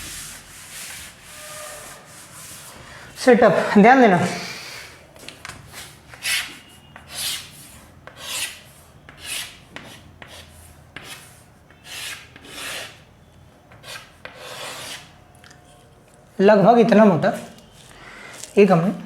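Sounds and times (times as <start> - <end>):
writing tool rasping strokes: 13.8 - 15.1.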